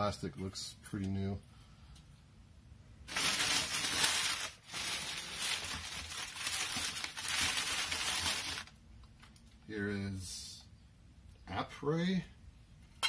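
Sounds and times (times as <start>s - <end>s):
wrapping crinkling and tearing: 3.1s - 9.4s.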